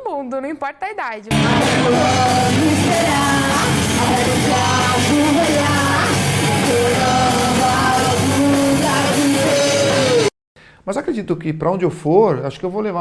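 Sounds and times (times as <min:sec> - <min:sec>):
loud rock band playing: 0:01.3 - 0:10.3
singer holding long notes: 0:01.3 - 0:10.3.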